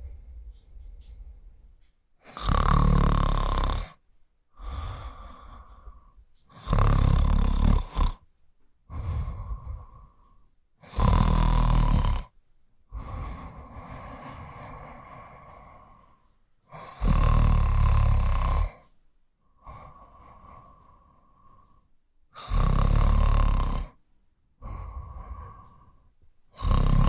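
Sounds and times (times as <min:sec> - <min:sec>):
loud snores: 0:02.2 - 0:04.0, 0:06.5 - 0:08.2, 0:08.9 - 0:12.3, 0:12.9 - 0:18.9, 0:19.6 - 0:24.0, 0:24.6 - 0:27.0.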